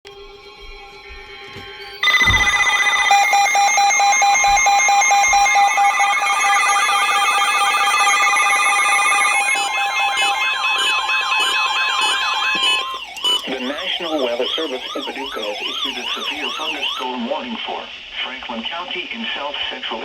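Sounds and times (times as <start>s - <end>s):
steady alarm tones: 0.1s - 17.3s.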